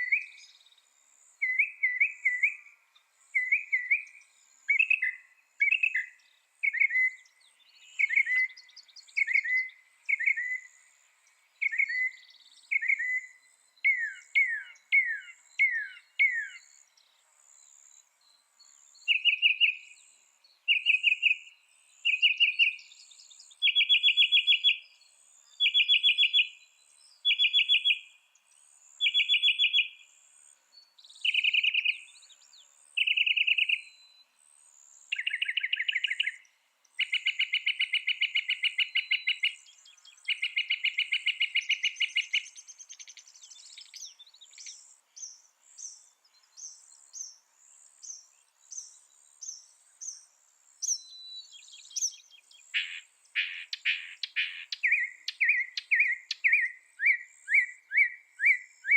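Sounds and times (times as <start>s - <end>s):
mockingbird singing: 3.4s - 10.8s, 11.6s - 16.7s, 19.1s - 19.9s, 20.7s - 24.9s, 25.6s - 26.6s, 27.2s - 28.0s, 29.0s - 30.0s, 31.1s - 34.0s, 35.1s - 58.9s.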